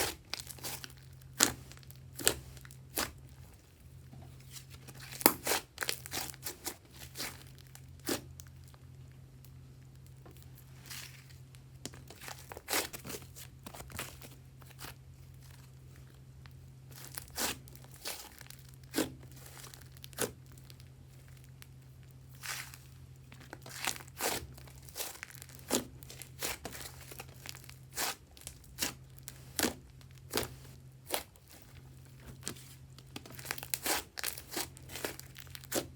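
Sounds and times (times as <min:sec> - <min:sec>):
slime popping and crackling: 0:16.9 - 0:21.7, 0:22.4 - 0:31.6, 0:32.3 - 0:35.9.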